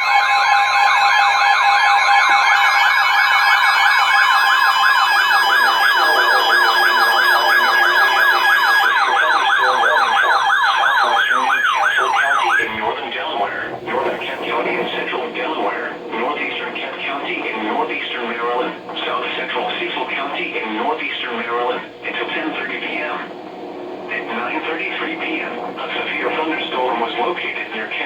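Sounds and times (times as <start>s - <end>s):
two steady alert tones: 0.0s - 12.8s
electronic siren warbling: 0.0s - 15.0s.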